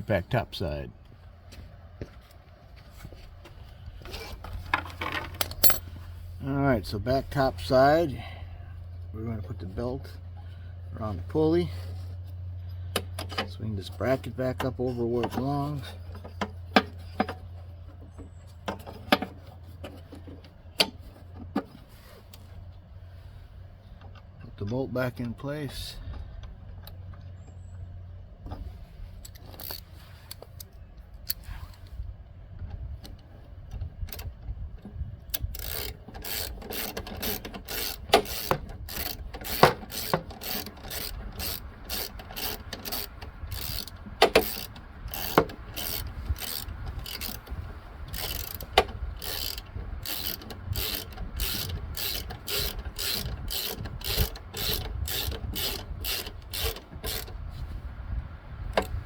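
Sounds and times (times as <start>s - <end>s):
handling sounds: 2.1s - 6.1s
ratchet wrench clicking: 5.4s - 5.8s, 35.3s - 57.4s.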